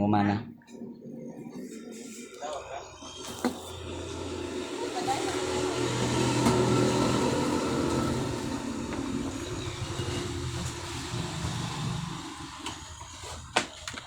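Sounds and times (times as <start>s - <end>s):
vehicle engine running: 3.2s - 13.5s.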